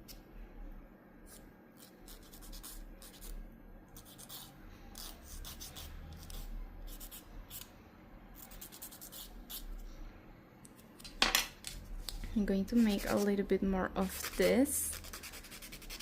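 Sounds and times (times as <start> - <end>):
nail file scratching fingernail: 1.3 - 3.4, 4.0 - 7.7, 8.4 - 9.7, 12.8 - 13.3, 14.1 - 16.0.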